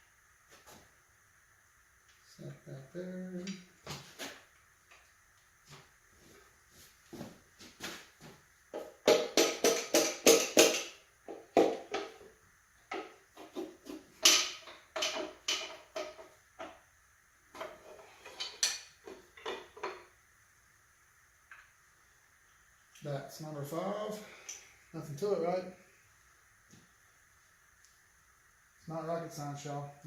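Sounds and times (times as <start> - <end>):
sharp metallic knocks: 8.8 - 11.0.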